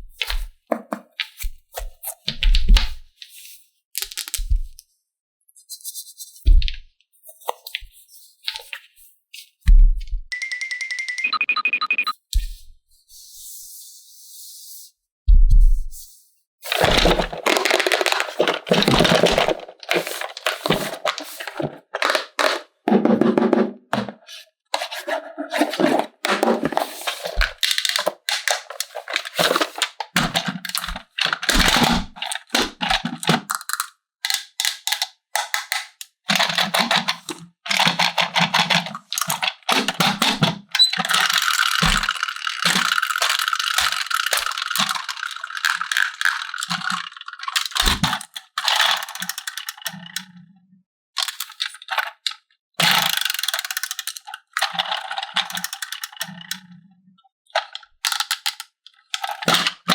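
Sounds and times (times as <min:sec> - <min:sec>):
plastic toy parts clicking and scraping: 0:04.0 - 0:04.5, 0:16.6 - 0:50.4, 0:51.2 - 0:56.8, 0:57.5 - 0:59.9.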